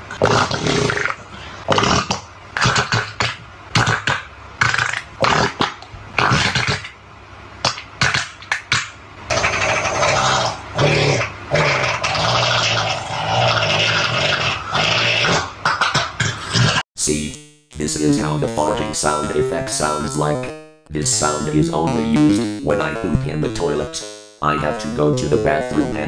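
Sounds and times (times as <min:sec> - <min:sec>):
rasping fart noises: 0:00.1 - 0:07.0, 0:07.6 - 0:16.8, 0:21.8 - 0:22.8.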